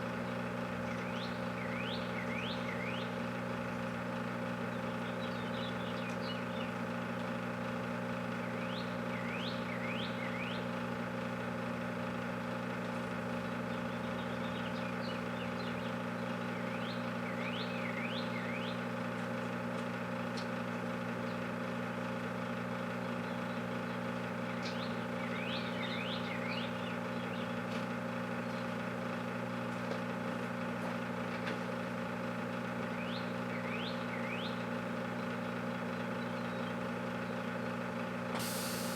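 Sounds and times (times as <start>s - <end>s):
microwave oven humming: 0.0s - 38.9s
bird chirping: 0.8s - 3.2s, 4.7s - 6.7s, 8.4s - 10.6s, 13.8s - 18.8s, 24.5s - 27.5s, 33.0s - 34.6s.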